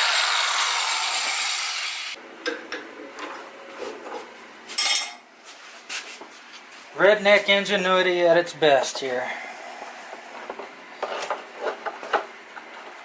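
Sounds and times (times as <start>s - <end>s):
metal tube grinding hiss: 0.0s - 2.2s.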